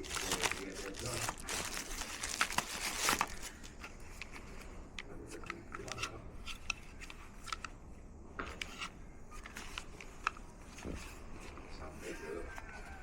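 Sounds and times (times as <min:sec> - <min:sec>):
packaging rustling and crinkling: 0:00.0 - 0:04.7.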